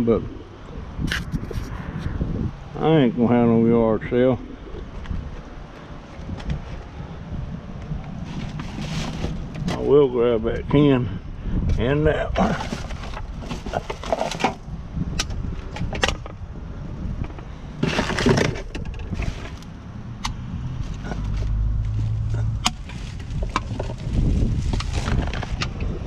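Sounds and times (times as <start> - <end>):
low rumble: 0.0 - 26.0
trash rustling: 8.1 - 10.0, 12.3 - 14.7, 17.7 - 19.8, 20.8 - 25.8.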